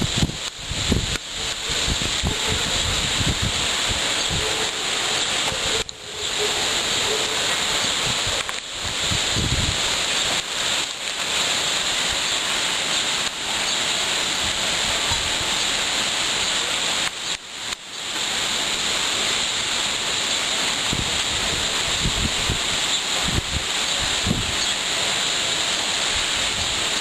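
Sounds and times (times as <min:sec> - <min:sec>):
wind buffeting microphone: 0:00.0 - 0:04.7, 0:07.8 - 0:10.0, 0:20.8 - 0:24.6
rain: 0:00.0 - 0:27.0
wind gusts: 0:00.0 - 0:27.0.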